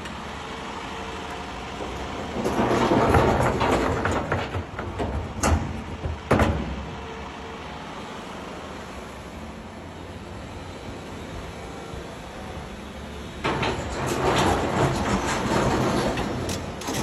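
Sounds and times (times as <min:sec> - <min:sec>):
excavator engine running: 0:00.0 - 0:17.0
excavator clattering: 0:01.2 - 0:07.2, 0:13.3 - 0:17.0.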